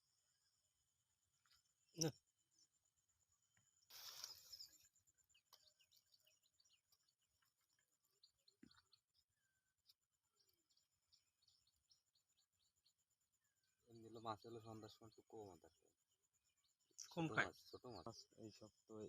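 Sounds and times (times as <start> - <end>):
faint bird chirps: 0.0 - 19.0.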